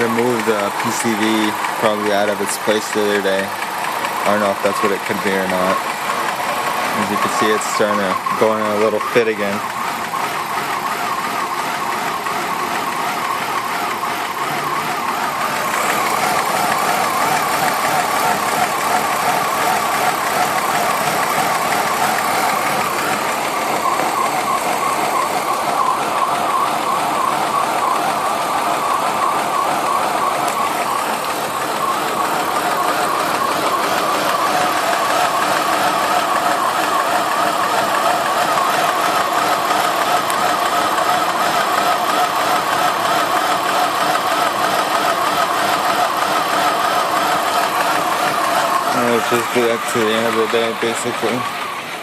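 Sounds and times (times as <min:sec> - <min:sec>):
car engine idling roughly: 0:00.0 - 0:52.0.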